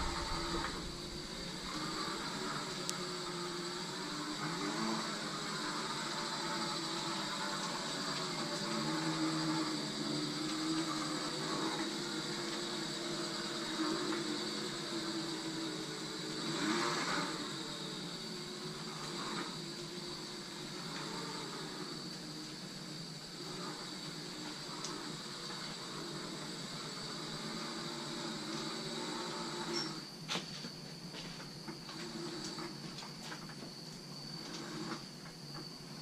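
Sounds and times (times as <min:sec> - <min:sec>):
rushing noise: 0:00.0 - 0:02.1
electric motor whirring and whining: 0:00.0 - 0:30.2, 0:31.7 - 0:33.4.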